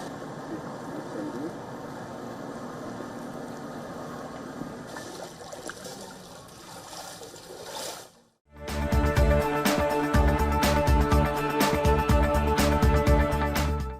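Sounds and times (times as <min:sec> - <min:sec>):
running water: 0:00.0 - 0:08.4.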